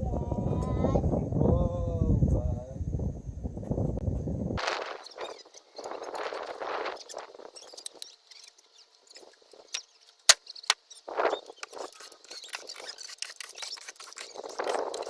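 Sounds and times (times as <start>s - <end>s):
scraping and rustling of handling: 4.6s - 15.0s.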